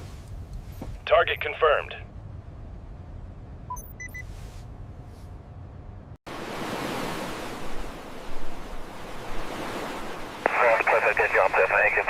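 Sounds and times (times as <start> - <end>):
low rumble: 0.0 - 6.2
wind: 0.0 - 12.0
short electronic beeps: 3.7 - 4.3
ocean waves rushing: 6.3 - 12.0.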